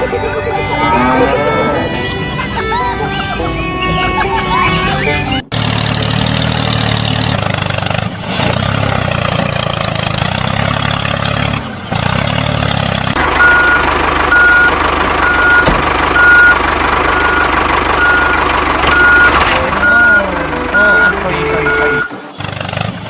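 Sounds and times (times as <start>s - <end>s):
heavy vehicle engine running: 0.0s - 23.0s
reversing alarm beeping: 13.4s - 22.3s.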